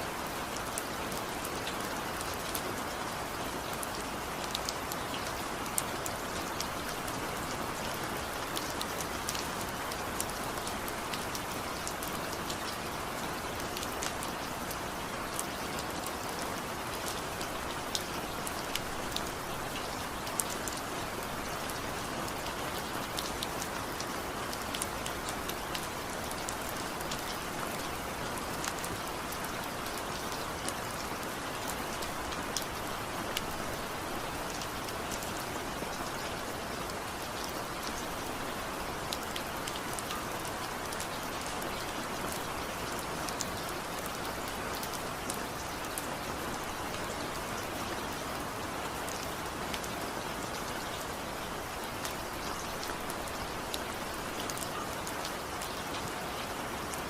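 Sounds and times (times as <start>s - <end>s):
steady rain hiss: 0.0s - 57.0s.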